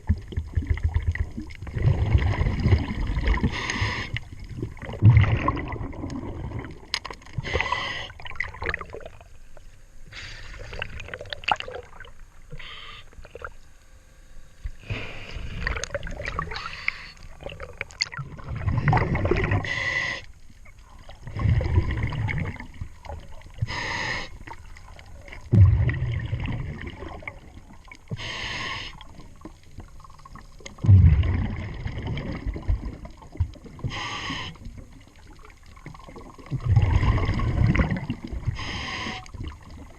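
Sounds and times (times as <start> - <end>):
exhaled bubbles rumbling: 0.0 - 9.6, 10.5 - 12.5, 15.4 - 28.4, 29.0 - 39.9
hissing regulator inhalation: 3.5 - 4.2, 19.6 - 20.3, 23.6 - 24.4, 28.1 - 29.1, 33.9 - 34.7, 38.5 - 39.3.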